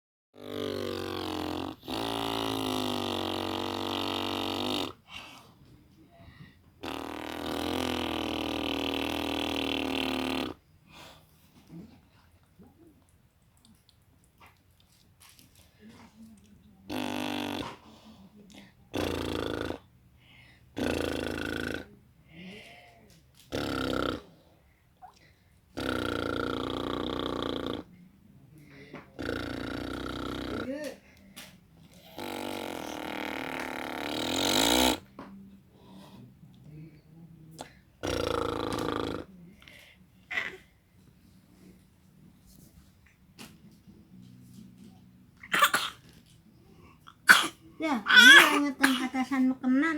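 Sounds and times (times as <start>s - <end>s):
hoarse voice calling loudly: 47.3s - 49.0s.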